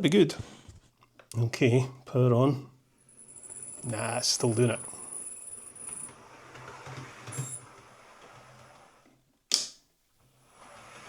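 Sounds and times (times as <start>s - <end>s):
electric motor high-pitched whistle: 3.1s - 6.3s, 7.3s - 7.7s
sharp click: 9.5s - 9.8s.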